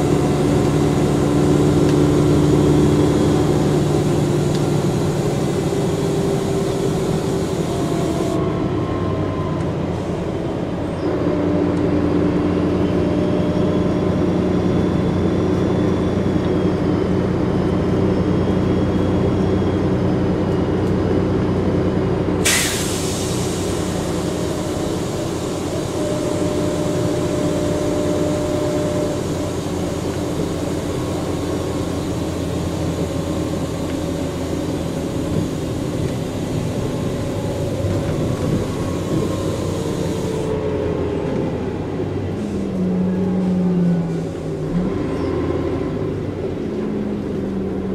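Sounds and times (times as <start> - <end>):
bus diesel engine running: 0.0 - 47.9
hiss of compressed air: 22.4 - 26.4.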